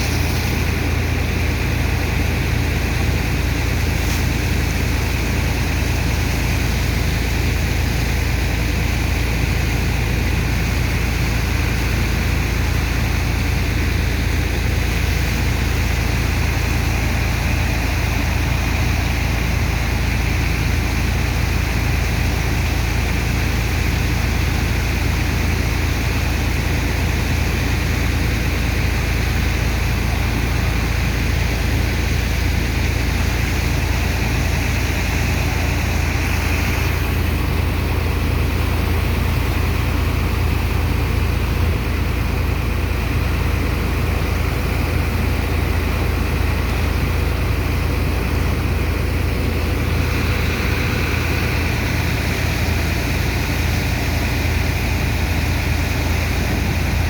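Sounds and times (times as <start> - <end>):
rushing hiss: 0.0 - 1.4
heavy engine and pump droning: 0.0 - 57.0.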